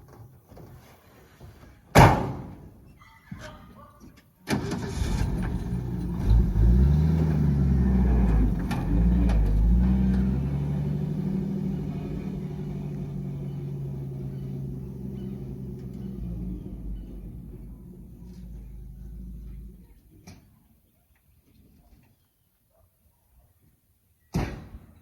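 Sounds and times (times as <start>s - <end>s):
vehicle engine revving: 4.8s - 20.1s.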